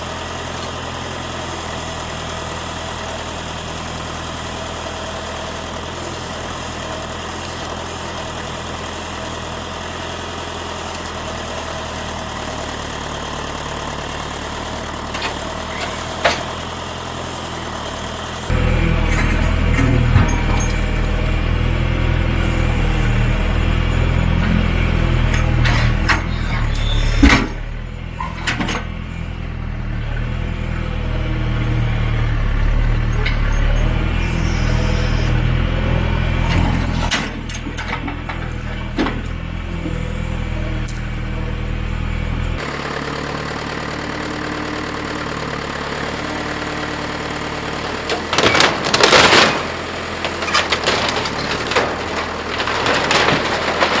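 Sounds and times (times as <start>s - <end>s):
diesel engine running: 0.0s - 54.0s
sharp knocks and cracks: 15.1s - 16.6s, 47.5s - 54.0s.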